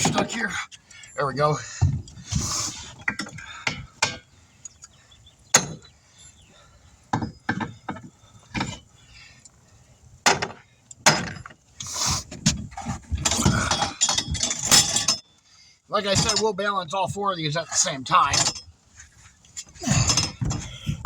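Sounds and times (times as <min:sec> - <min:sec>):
metal tools clanking: 0:00.0 - 0:01.4, 0:13.1 - 0:15.3, 0:16.0 - 0:19.1, 0:19.8 - 0:21.0.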